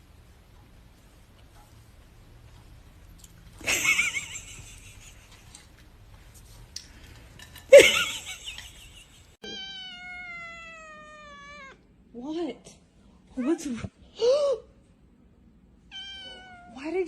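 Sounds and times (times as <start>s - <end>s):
cat yowling: 9.4s - 11.8s, 15.9s - 16.8s.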